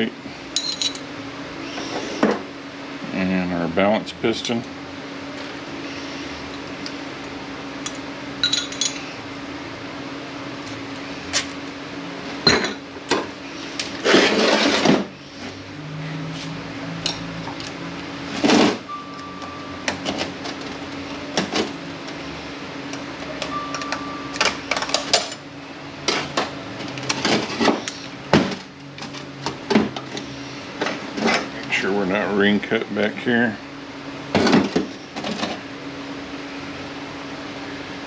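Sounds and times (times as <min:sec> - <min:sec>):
low hum: 0:00.1 - 0:38.0
metal parts clinking: 0:00.6 - 0:01.0, 0:08.4 - 0:09.0.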